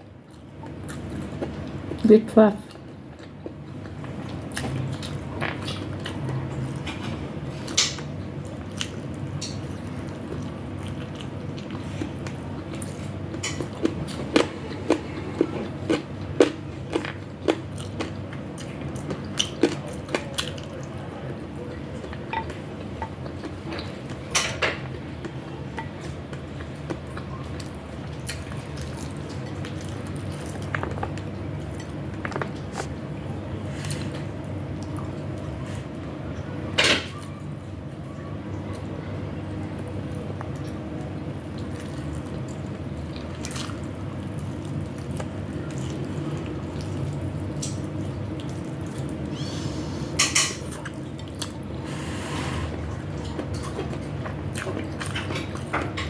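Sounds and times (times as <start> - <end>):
steady low hum: 0.0 - 56.0
chewing and biting: 2.7 - 33.0, 39.8 - 49.4, 50.0 - 51.8, 52.9 - 56.0
cutlery clinking on a plate: 50.2 - 50.6.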